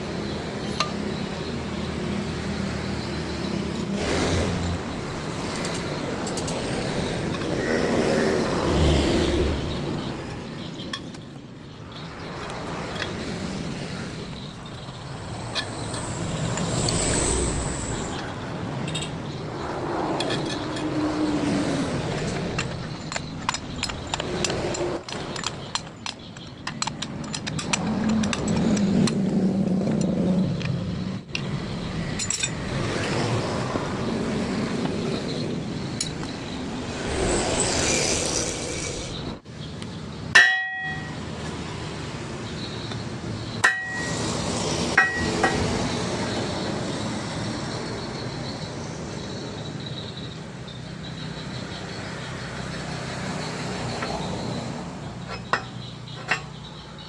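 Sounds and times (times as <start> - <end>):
steady background noise: 0.0 - 57.0
metal tools clinking and knocking: 18.2 - 19.4, 20.2 - 21.0, 22.2 - 31.5, 32.1 - 32.6, 40.4 - 41.2, 43.6 - 44.2, 45.0 - 45.7, 55.2 - 57.0
ringing metal clang: 40.4 - 41.2, 43.6 - 44.2, 45.0 - 45.6, 55.2 - 56.8.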